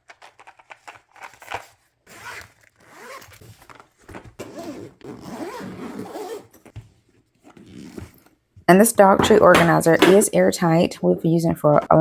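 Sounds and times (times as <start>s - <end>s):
zipper being zipped: 2.1s - 3.6s, 4.4s - 6.7s, 7.4s - 8.2s.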